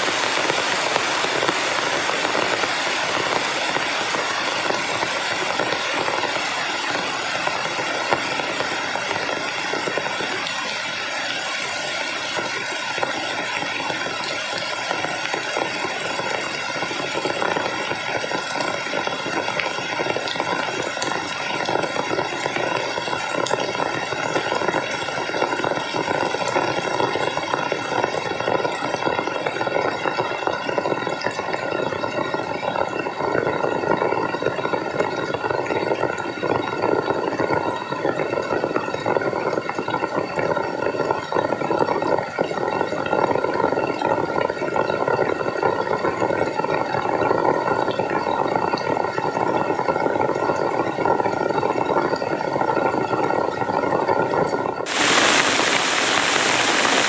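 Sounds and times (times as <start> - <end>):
heavy rain hissing: 0.0 - 11.6, 54.9 - 57.0
water bubbling and splashing: 54.9 - 57.0.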